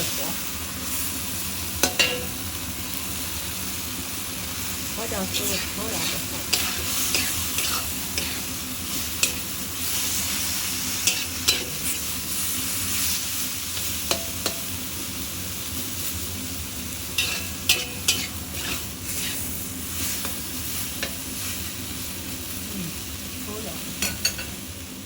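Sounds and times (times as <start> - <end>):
eggplant sizzling in a pan: 0.0 - 25.0
metal clinking against pan: 1.8 - 2.4, 9.2 - 9.5, 11.0 - 11.9, 14.1 - 14.8, 17.2 - 18.8, 24.0 - 24.6
spatula scraping a pan: 5.2 - 13.4, 17.1 - 21.7.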